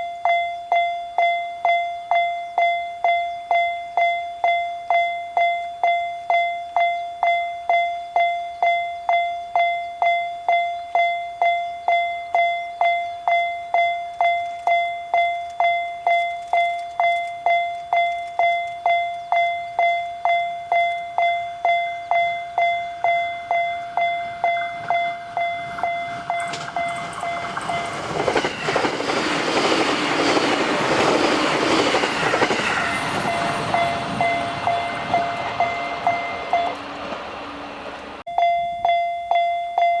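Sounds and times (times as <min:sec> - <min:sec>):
level crossing warning bell: 0:00.0 - 0:40.0
train passing: 0:14.1 - 0:38.3.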